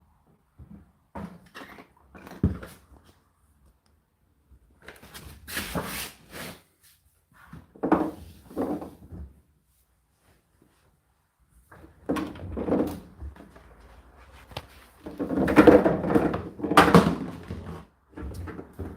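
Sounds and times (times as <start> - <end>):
scraping or rustling: 5.0 - 6.6.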